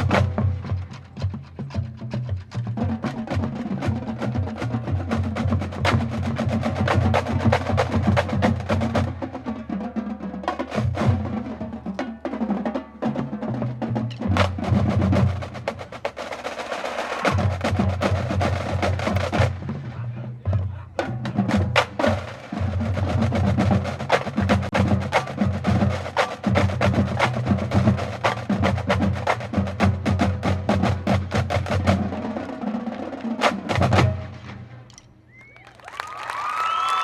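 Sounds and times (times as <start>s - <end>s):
snare drum strokes and rolls: 0.0s - 37.0s
pitched bass drums: 17.2s - 32.2s.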